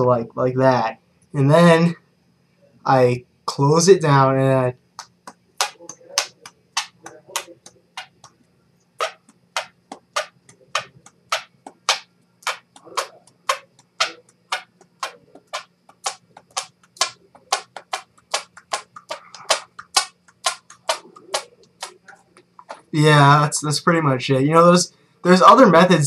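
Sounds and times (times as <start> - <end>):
squeaky hand pops: 5.0 - 8.3, 9.0 - 22.9.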